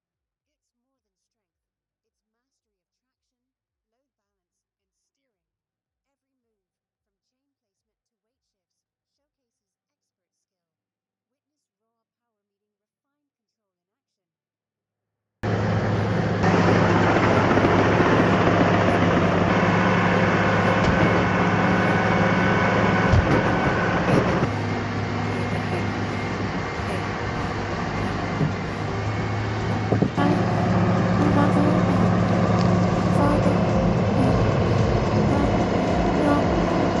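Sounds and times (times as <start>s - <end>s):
heavy machinery engine running: 15.4s - 37.0s.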